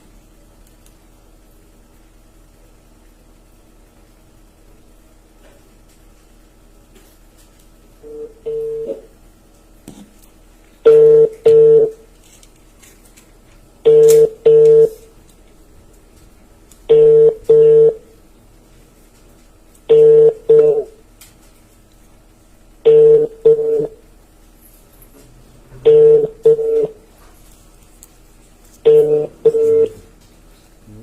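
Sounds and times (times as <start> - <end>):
telephone ringback tone: 8.0 - 9.0, 10.8 - 12.0, 13.8 - 15.0, 16.9 - 18.0, 19.9 - 21.0, 22.8 - 24.0, 25.8 - 27.0, 28.9 - 30.0.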